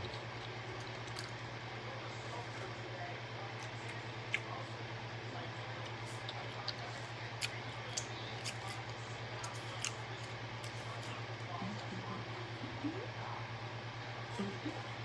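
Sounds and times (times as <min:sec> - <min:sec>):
chewing mouth clicks and smacks: 0:00.0 - 0:01.4, 0:03.6 - 0:04.5, 0:05.8 - 0:11.2.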